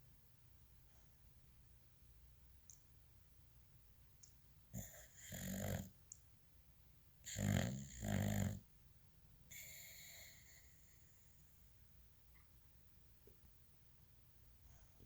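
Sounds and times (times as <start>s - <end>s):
dog snoring: 4.7s - 6.0s, 7.2s - 8.7s, 9.5s - 11.4s.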